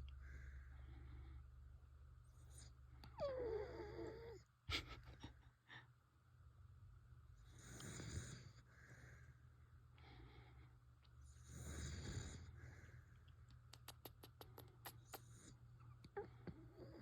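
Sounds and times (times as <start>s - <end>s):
dog snoring softly: 2.3s - 4.4s, 7.4s - 9.3s, 11.2s - 13.1s, 15.0s - 17.0s.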